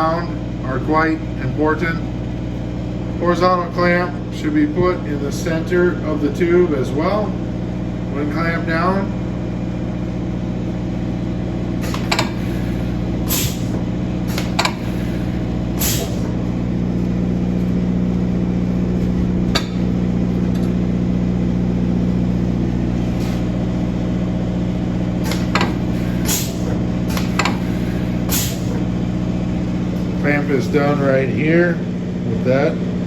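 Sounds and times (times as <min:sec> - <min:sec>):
metal-cutting saw humming: 0:10.0 - 0:32.7
sharp clicks and hisses: 0:11.8 - 0:16.3, 0:25.2 - 0:28.8.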